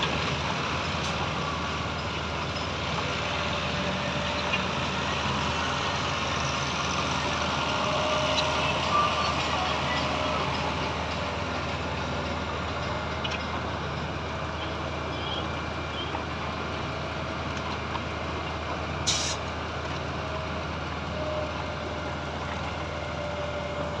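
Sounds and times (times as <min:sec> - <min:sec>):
heavy diesel engine running: 0:00.0 - 0:24.0
short air hiss: 0:19.1 - 0:19.4.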